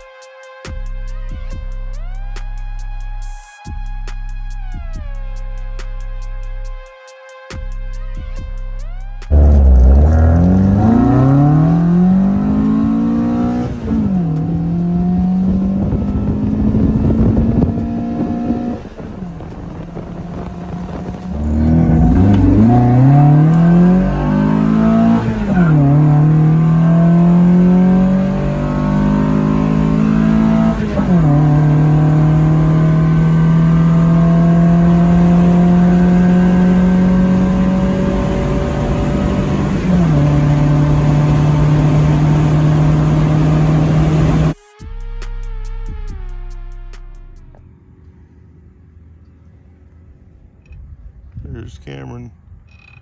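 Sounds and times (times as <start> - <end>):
car engine accelerating through gears: 9.3 - 44.6.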